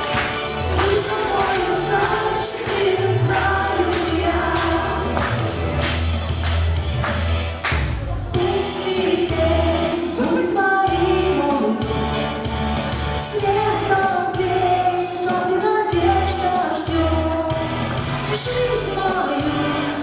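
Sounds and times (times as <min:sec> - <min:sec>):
backing track with steady beat: 0:00.0 - 0:20.0
woman singing pop song: 0:00.7 - 0:05.3, 0:08.4 - 0:12.2, 0:13.1 - 0:20.0.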